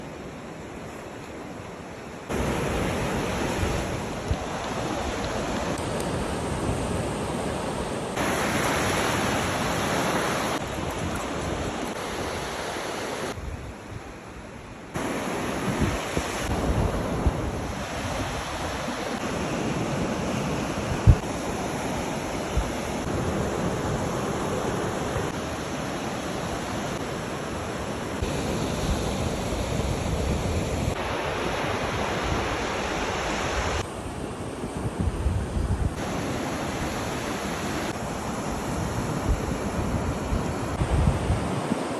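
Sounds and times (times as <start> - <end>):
sea waves washing ashore: 0.0 - 41.9
wind buffeting microphone: 15.6 - 21.4, 34.5 - 37.6, 38.5 - 41.9.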